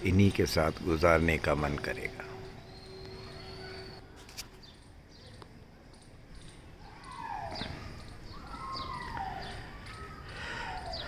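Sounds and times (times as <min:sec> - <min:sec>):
faint high chirps: 0:01.4 - 0:11.0
bird falling calls: 0:06.8 - 0:11.0.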